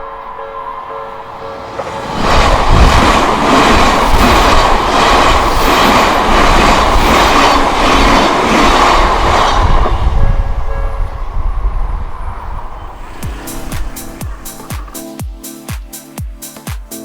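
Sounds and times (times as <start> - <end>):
train wheels clacking on rails: 0.8 - 11.6.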